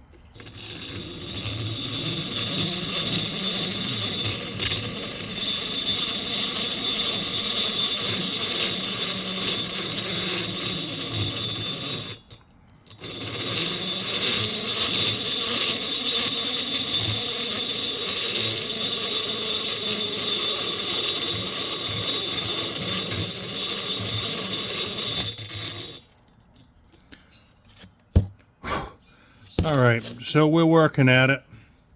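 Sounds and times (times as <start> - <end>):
air die grinder whining: 0.0 - 26.2.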